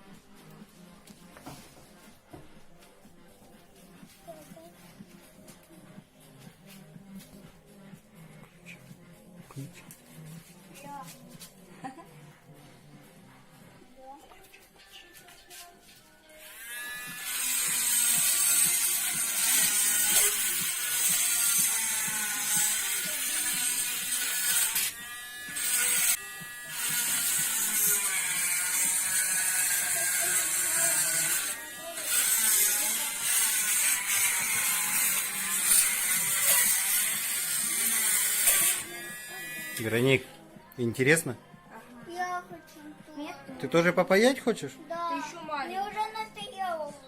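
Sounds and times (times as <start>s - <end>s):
handheld electric tool whirring: 16.4s - 40.2s.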